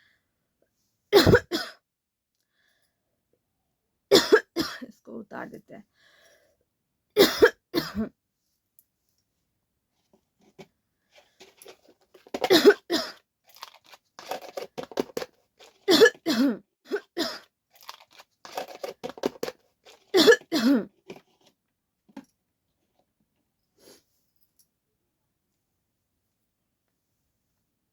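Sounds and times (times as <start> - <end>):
person coughing: 1.1 - 1.8, 4.1 - 5.0, 7.2 - 8.1, 12.4 - 13.2, 15.9 - 17.4, 20.1 - 20.9.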